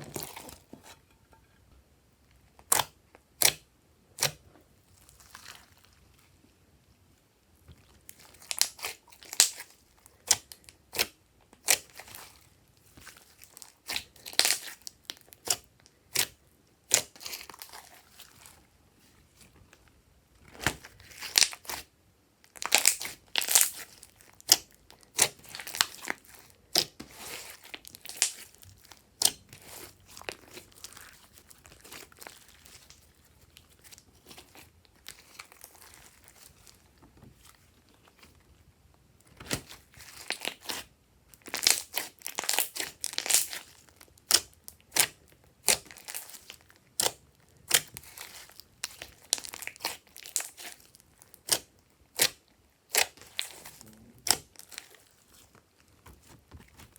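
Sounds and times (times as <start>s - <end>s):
slime squishing and popping: 8.1s - 12.2s, 22.5s - 36.8s, 39.4s - 55.0s.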